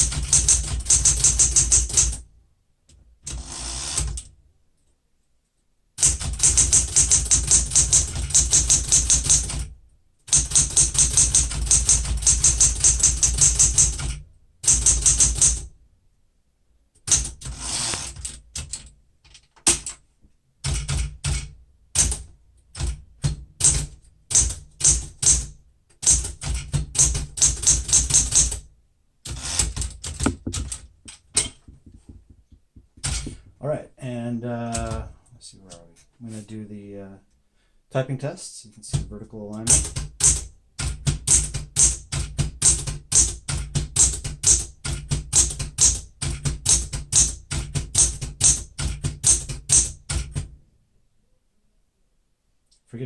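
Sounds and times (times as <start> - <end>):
manual typewriter typing: 0.0 - 2.2, 6.0 - 9.7, 10.3 - 15.7, 17.0 - 20.0, 20.6 - 28.6, 33.0 - 33.4, 34.7 - 35.1, 38.9 - 50.5.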